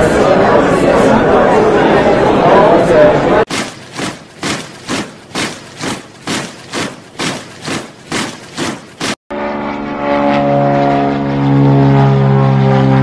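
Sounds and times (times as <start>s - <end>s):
propeller aircraft engines droning: 3.2s - 13.0s
sharp rhythmic thuds: 3.5s - 9.2s.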